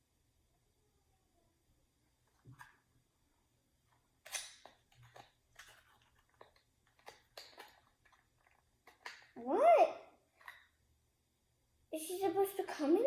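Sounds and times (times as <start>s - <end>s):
packaging crackling and clicking: 4.3s - 9.4s.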